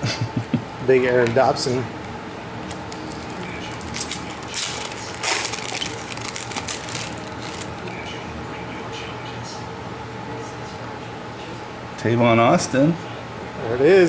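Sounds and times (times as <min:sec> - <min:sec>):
packaging rustling and crinkling: 0:02.7 - 0:07.9.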